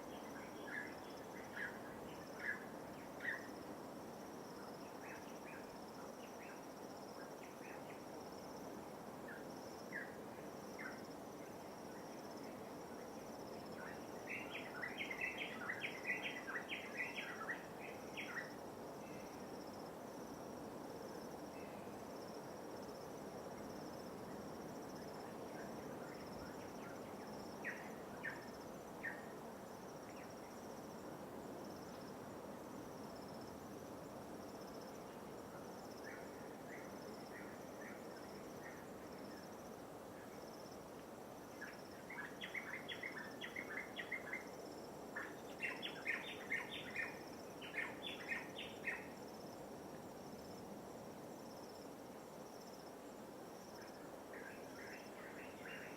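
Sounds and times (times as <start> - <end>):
bird chirping: 45.2 - 49.2.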